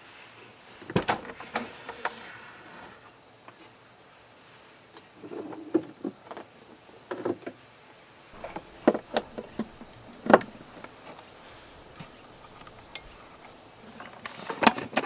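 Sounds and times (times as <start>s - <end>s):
objects knocking and clattering: 8.4s - 15.0s.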